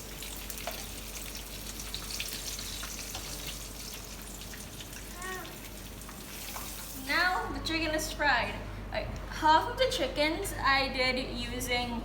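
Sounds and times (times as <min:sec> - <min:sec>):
chicken sizzling in frying oil: 0:00.0 - 0:07.1.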